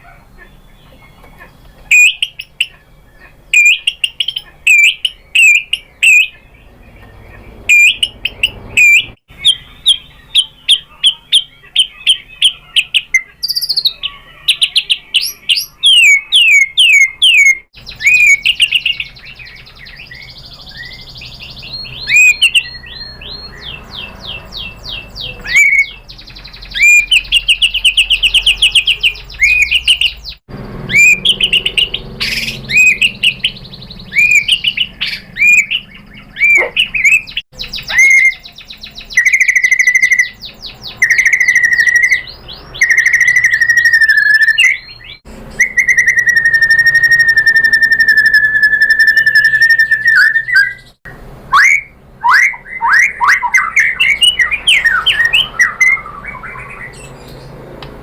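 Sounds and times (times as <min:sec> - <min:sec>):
bird singing chirps and trills: 0:00.0 - 0:58.0
bird long held whistle: 0:01.9 - 0:02.7, 0:03.5 - 0:06.4, 0:07.7 - 0:10.8, 0:15.2 - 0:19.1, 0:22.0 - 0:23.2, 0:25.4 - 0:26.0, 0:26.7 - 0:30.1, 0:30.9 - 0:33.5, 0:34.1 - 0:35.8, 0:36.4 - 0:38.4, 0:41.0 - 0:50.9, 0:51.5 - 0:57.0.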